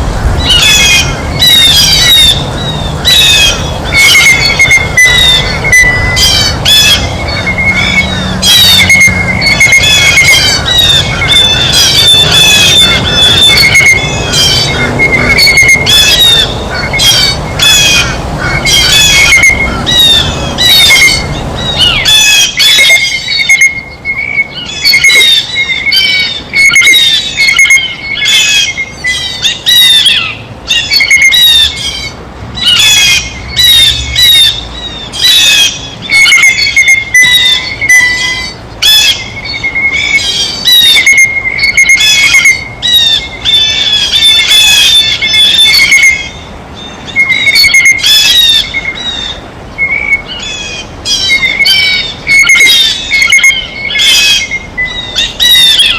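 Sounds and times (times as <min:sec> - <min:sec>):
blue jays calling: 0:00.0 - 0:55.9.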